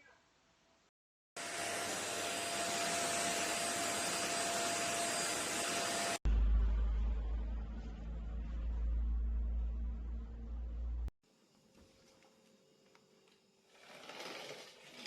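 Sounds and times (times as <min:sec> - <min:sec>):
stick vacuum cleaner running: 0:01.4 - 0:06.2
deep low rumble: 0:06.3 - 0:11.1.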